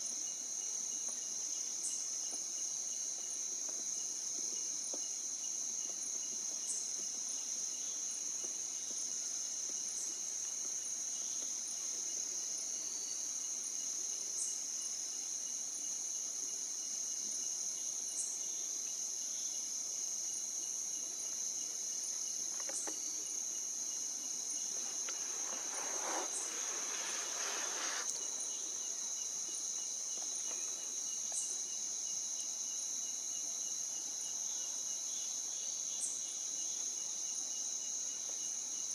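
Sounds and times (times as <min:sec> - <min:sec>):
insects chirring: 0:17.5 - 0:38.9
brief rustling hiss: 0:24.6 - 0:28.6.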